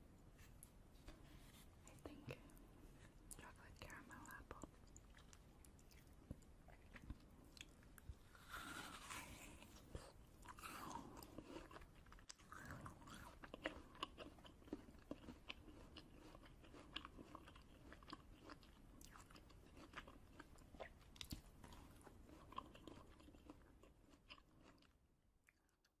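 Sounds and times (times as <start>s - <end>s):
person chewing crunchy snacks: 4.2s - 25.7s.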